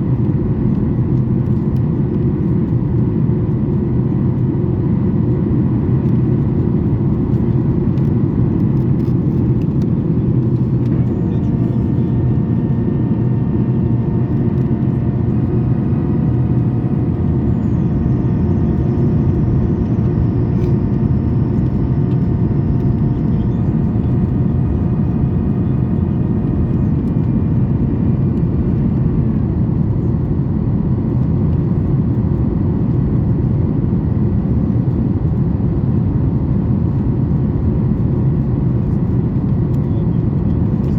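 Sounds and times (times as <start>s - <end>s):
airplane cabin roar: 0.0s - 40.9s
faint whining tones: 6.0s - 29.9s.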